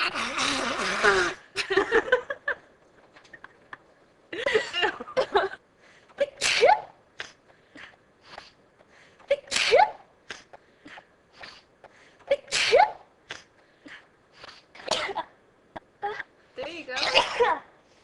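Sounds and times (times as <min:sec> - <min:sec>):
sniffs and breaths: 0:07.2 - 0:09.3, 0:10.3 - 0:12.3
woman sneezing: 0:09.3 - 0:10.0, 0:12.3 - 0:13.0, 0:16.9 - 0:17.7.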